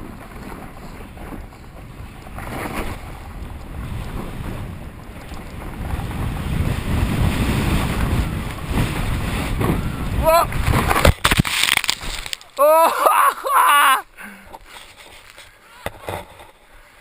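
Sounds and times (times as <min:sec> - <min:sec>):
snowboard scraping over snow: 0:00.0 - 0:11.1
wind on microphone: 0:00.0 - 0:12.3.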